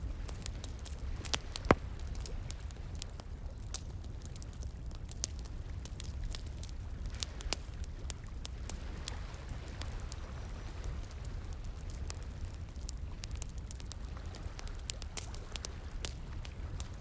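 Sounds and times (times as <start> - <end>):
wood fire crackling: 0.6 - 2.3.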